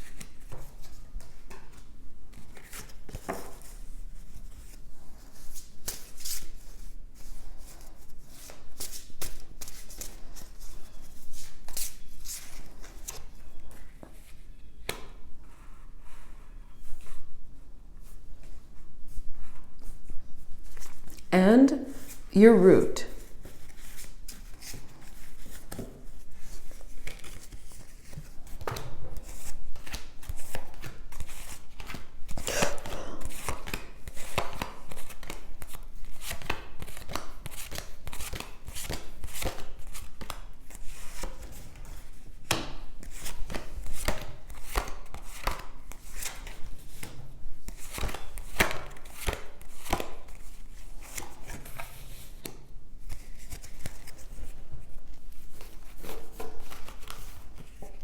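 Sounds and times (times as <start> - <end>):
cards being shuffled: 33.2 - 54.6, 55.5 - 58.0.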